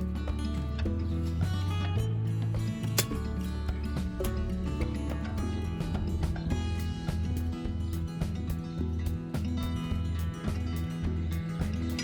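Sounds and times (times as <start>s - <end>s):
background music with bass line: 0.0s - 12.0s.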